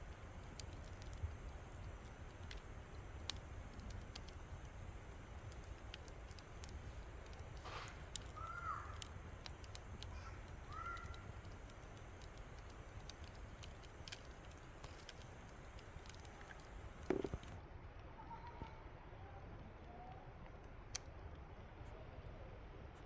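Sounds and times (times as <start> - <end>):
wood fire crackling: 0.0 - 18.0
crow cawing: 8.3 - 9.1, 10.1 - 11.3.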